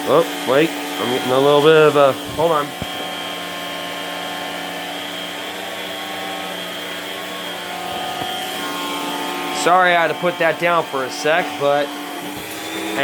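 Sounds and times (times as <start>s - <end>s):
vacuum motor hum: 0.0s - 13.0s
vacuum suction hiss: 0.9s - 13.0s.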